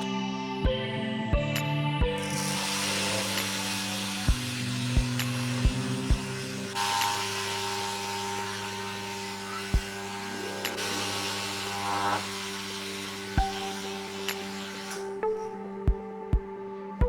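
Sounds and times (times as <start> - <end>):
background music with slow beat: 0.0 - 17.0
small electric motor whining: 2.2 - 15.4.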